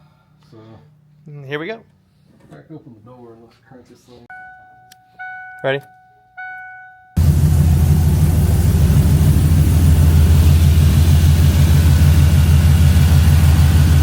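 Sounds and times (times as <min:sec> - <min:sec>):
loud engine idling: 0:07.2 - 0:14.0.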